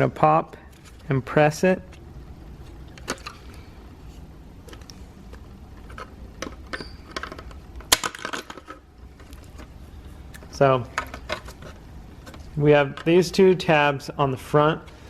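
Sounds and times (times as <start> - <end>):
plastic clicks and rattles: 4.6 - 9.7.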